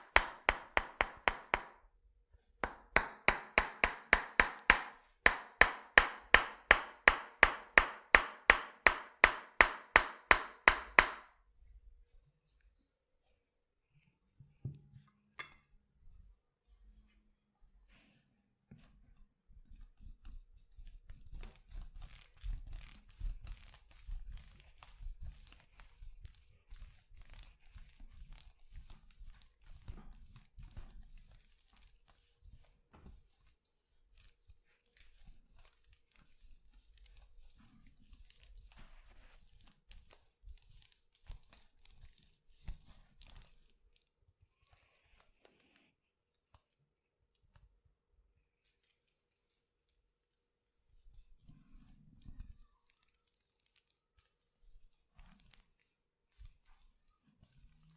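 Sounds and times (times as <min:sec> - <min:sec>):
hands rubbing hair and skin: 0:18.8 - 0:46.8, 0:48.6 - 0:57.9.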